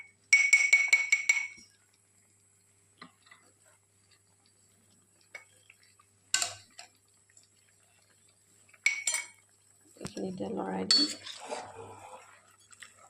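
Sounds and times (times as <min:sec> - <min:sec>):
metal utensils clinking: 0:06.4 - 0:06.9, 0:08.8 - 0:09.4, 0:10.1 - 0:11.6.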